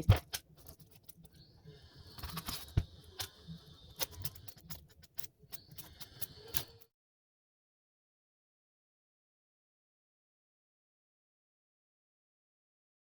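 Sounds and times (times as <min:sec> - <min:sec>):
small objects clicking: 0:02.1 - 0:06.9.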